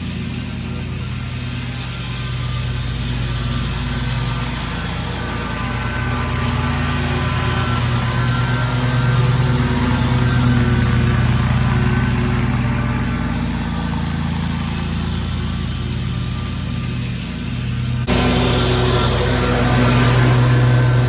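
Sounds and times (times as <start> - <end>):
lawn mower engine running: 0.0 - 21.0.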